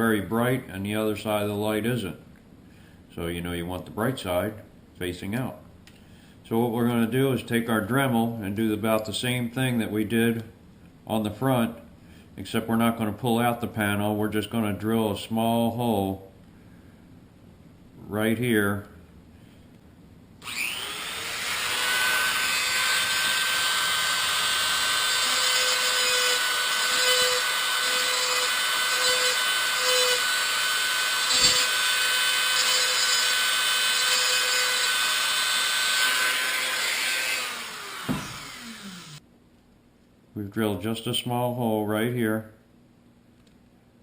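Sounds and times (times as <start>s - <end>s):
rotary tool drilling whine: 20.4s - 39.2s.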